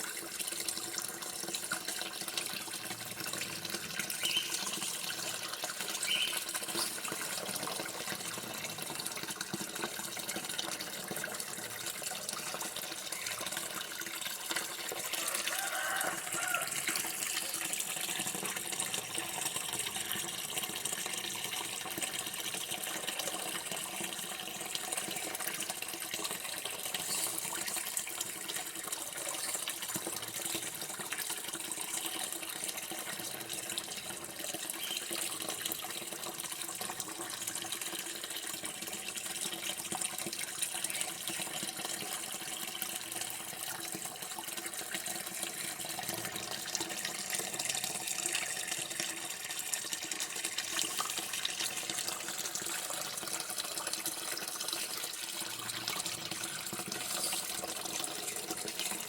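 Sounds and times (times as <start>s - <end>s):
running water: 0.0s - 59.0s.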